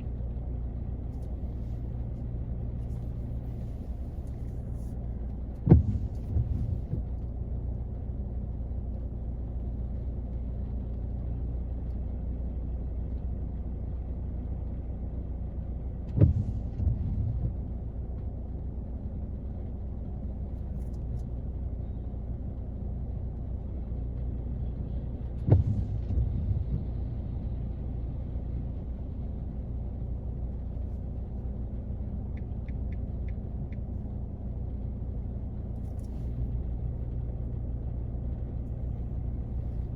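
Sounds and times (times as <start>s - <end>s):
sharp thump: 5.6s - 7.0s.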